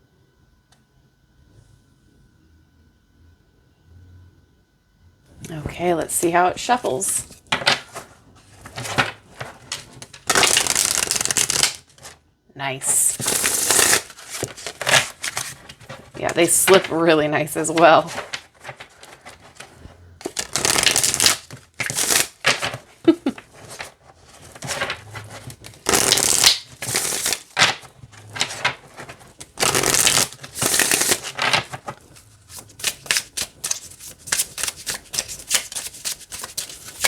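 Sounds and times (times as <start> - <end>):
cards being shuffled: 6.2 - 12.2, 12.9 - 17.0, 17.6 - 37.0.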